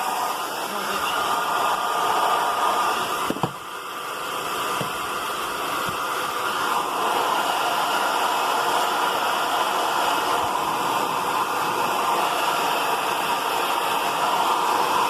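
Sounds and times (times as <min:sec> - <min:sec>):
hair dryer blowing: 0:00.0 - 0:15.0.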